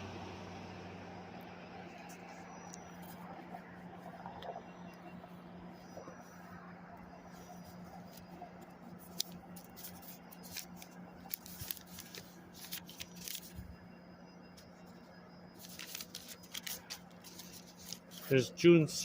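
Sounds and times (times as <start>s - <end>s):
steady low hum: 0.0s - 19.0s
device handling clicks and rustles: 7.4s - 13.8s, 15.6s - 18.4s.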